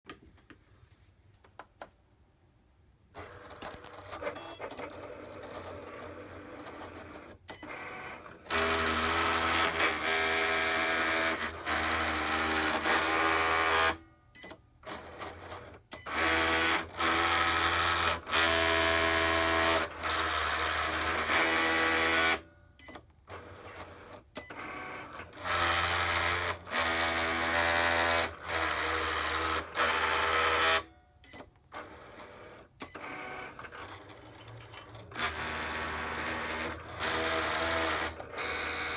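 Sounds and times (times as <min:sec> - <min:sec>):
cutting machine motors whining: 0:33.0 - 0:38.9.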